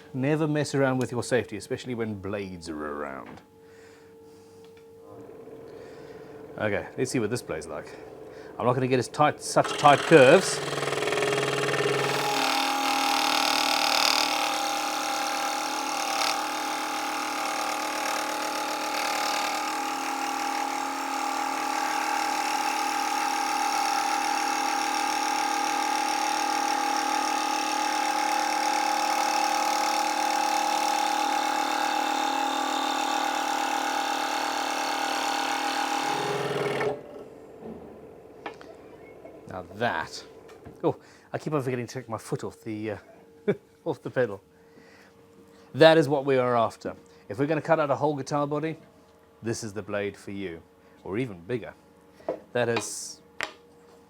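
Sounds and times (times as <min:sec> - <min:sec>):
scroll saw cutting wood: 0:05.1 - 0:37.3.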